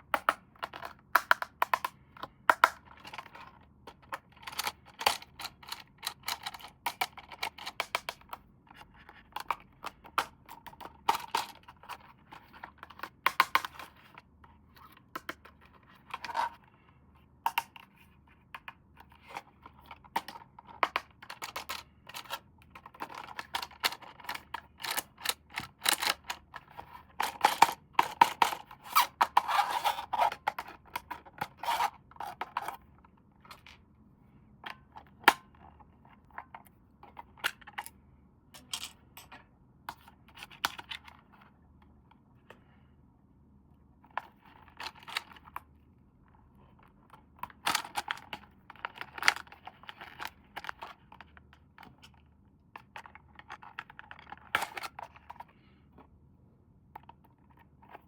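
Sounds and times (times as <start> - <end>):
plastic toy parts clicking: 0.2 - 8.3.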